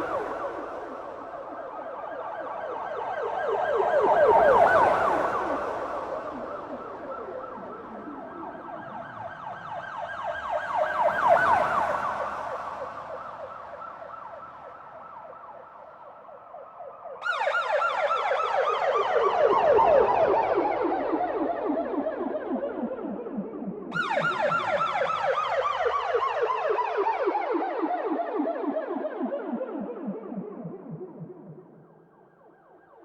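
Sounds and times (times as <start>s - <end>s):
police siren yelping: 0.0s - 31.8s
louder brighter siren yelping: 23.9s - 26.5s.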